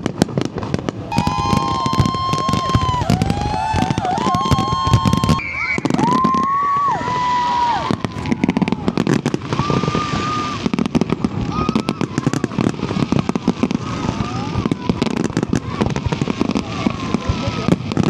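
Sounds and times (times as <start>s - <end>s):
fireworks crackling pops: 0.0s - 18.0s
firework whistles: 1.0s - 18.0s.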